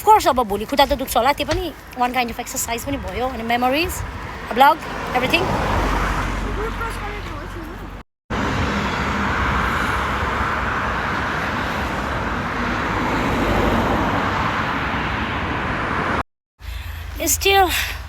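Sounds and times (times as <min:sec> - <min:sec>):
road traffic: 0:00.0 - 0:18.0.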